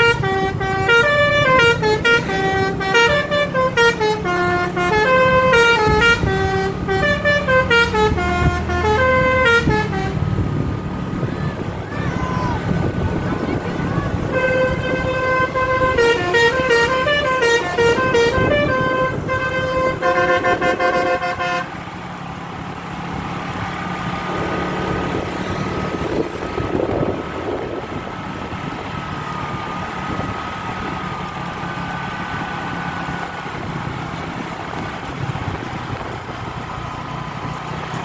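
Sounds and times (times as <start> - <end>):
multi-tone air horn melody: 0.0 - 10.5, 13.1 - 21.7
engine rumble: 0.0 - 38.0.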